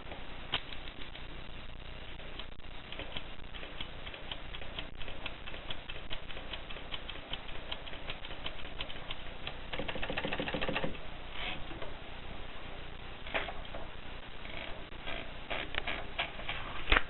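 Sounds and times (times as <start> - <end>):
manual typewriter key clacks: 9.7 - 11.0.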